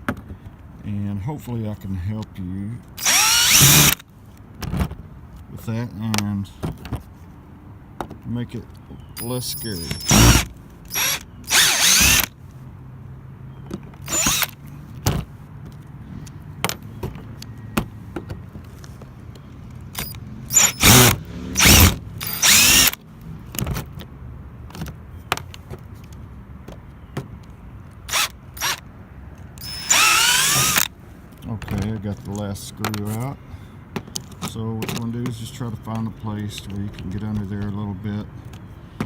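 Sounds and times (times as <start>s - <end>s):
power drill motor whining: 3.0s - 4.0s, 9.2s - 12.3s, 14.1s - 14.6s, 20.0s - 23.0s, 28.1s - 28.8s, 29.6s - 30.9s.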